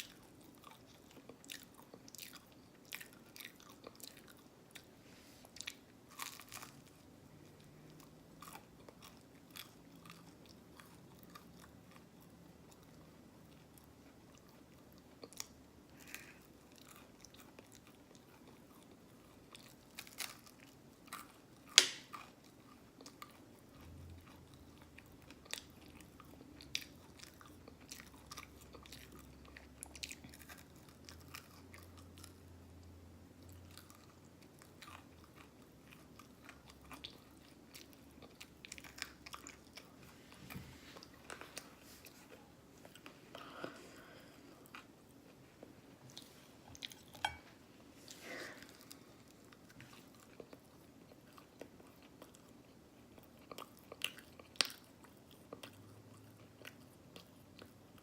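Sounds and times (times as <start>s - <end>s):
open-mouthed chewing: 0.0s - 58.0s.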